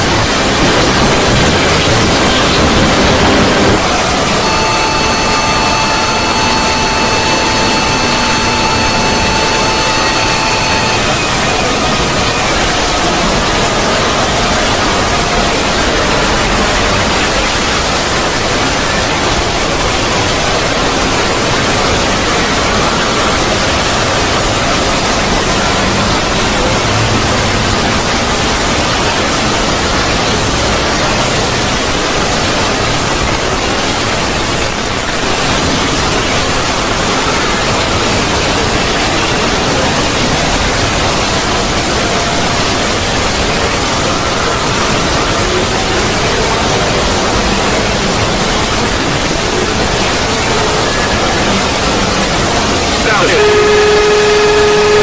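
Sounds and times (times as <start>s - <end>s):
rushing noise drone: 0.0s - 55.0s.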